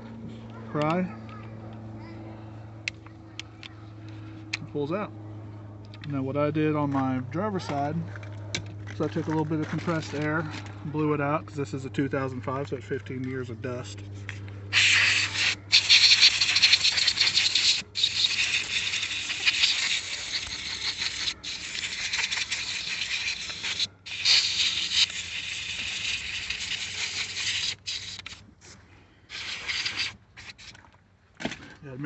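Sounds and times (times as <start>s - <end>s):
compressed air hissing: 14.7s - 28.4s, 29.3s - 30.6s.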